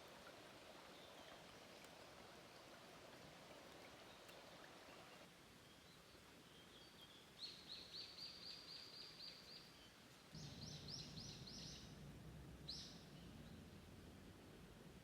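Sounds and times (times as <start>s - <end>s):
small songbird singing: 4.0s - 12.0s, 12.6s - 13.7s.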